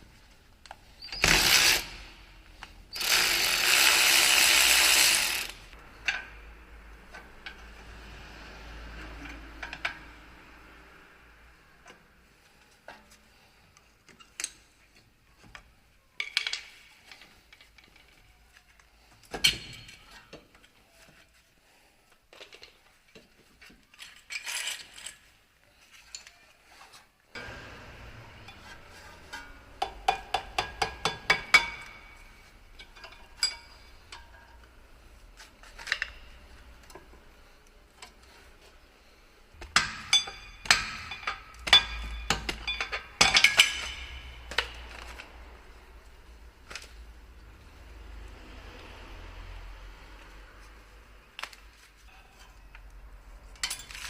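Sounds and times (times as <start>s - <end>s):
metal tools clinking: 28.5s - 34.7s, 39.8s - 45.2s, 53.5s - 54.0s.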